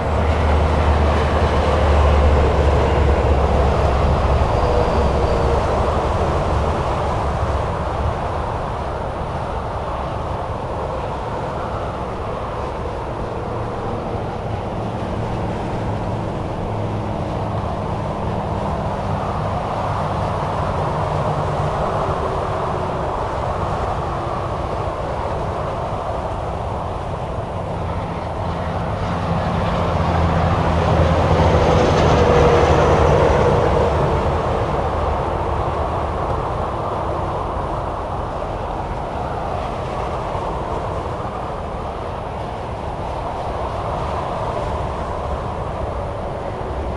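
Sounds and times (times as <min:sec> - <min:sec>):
highway traffic: 0:00.0 - 0:46.9.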